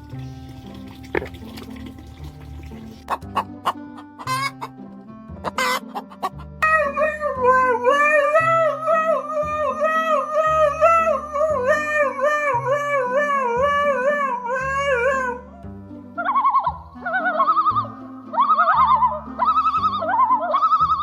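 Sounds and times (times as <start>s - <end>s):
background music with bass line: 0.0s - 21.0s
long wavering pitched call: 6.6s - 15.5s, 16.2s - 21.0s.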